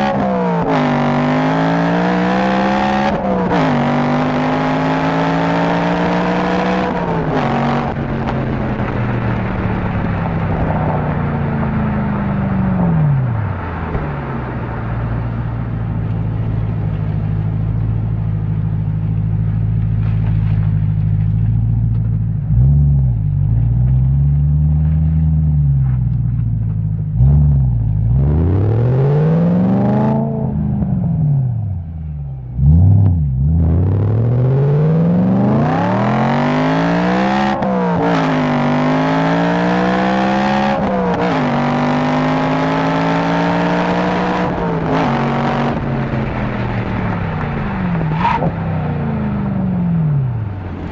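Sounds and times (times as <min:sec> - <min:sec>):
car engine idling and revving: 0:00.0 - 0:50.9.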